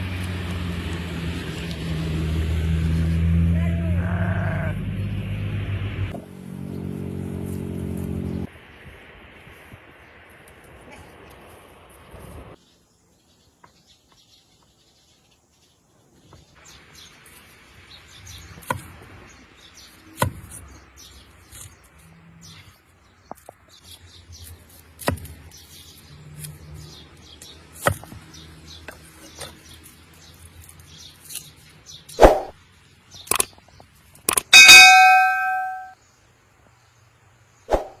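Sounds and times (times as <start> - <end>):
sharp knocks and clinks: 34.3 - 36.0
birds chirping: 34.5 - 36.0.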